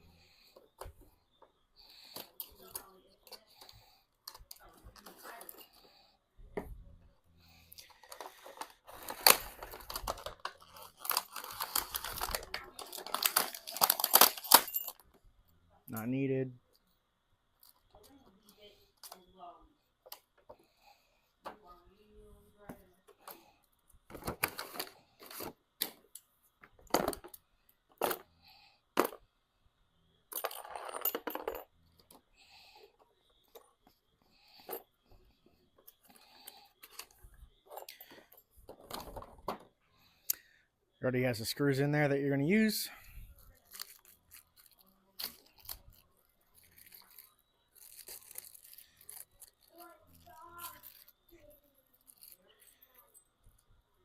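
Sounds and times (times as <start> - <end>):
metal parts rattling: 7.8 - 15.1, 43.1 - 51.4, 52.0 - 53.2
packaging crinkling and tearing: 8.9 - 14.7, 43.5 - 51.2.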